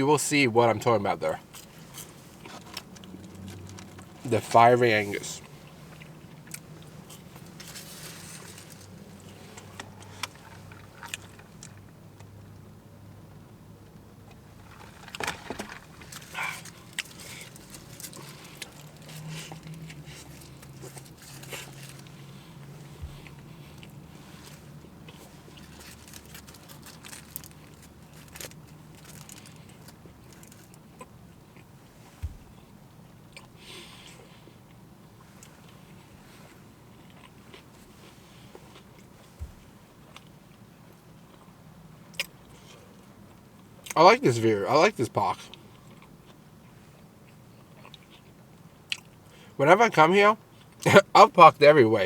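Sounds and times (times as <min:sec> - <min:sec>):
steady low hum: 0:00.0 - 0:49.7
person chewing burger: 0:05.2 - 0:12.3, 0:14.3 - 0:44.0, 0:45.4 - 0:49.5
crisp biting crunches: 0:14.6 - 0:22.3, 0:23.0 - 0:31.1.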